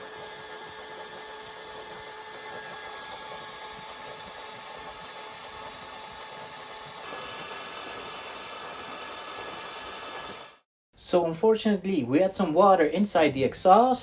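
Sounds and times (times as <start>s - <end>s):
boat engine running: 0.0s - 7.4s.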